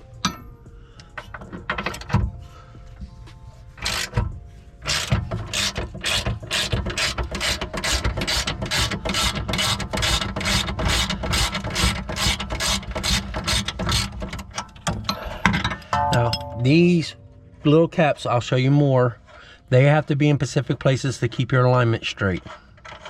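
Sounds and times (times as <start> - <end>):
ratchet wrench clicking: 3.8 - 4.2, 4.8 - 14.1.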